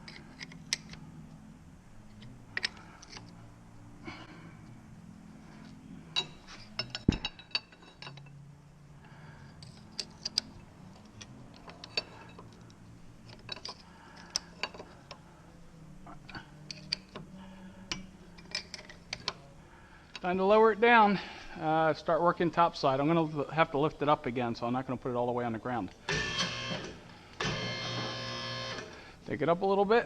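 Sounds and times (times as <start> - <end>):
faint steady hum: 0.0 - 30.0
metal tools clinking: 6.1 - 8.4, 9.6 - 12.6, 13.2 - 15.1.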